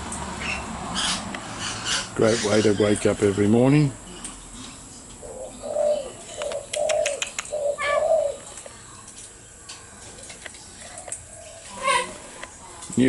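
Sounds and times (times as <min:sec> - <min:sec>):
bird cooing: 0:05.1 - 0:08.6, 0:10.8 - 0:12.3
sharp clicks: 0:06.4 - 0:07.5.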